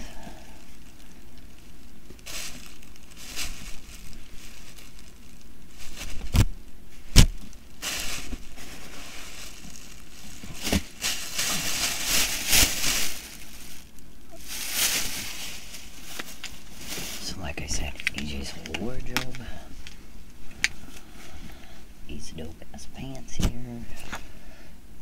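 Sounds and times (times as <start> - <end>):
clothes and shopping bag rustling: 0.0 - 19.4.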